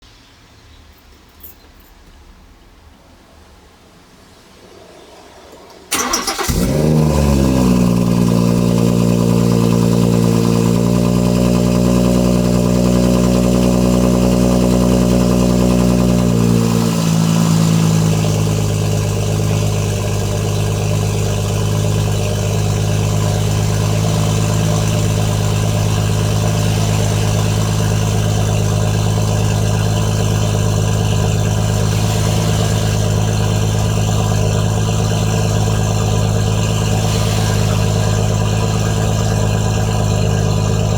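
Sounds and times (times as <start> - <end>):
car engine idling: 5.4 - 40.9.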